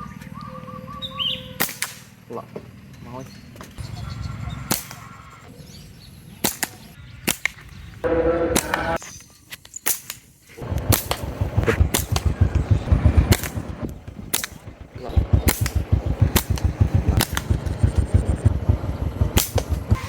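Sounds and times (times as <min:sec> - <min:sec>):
low fast rumble: 0:10.6 - 0:20.0.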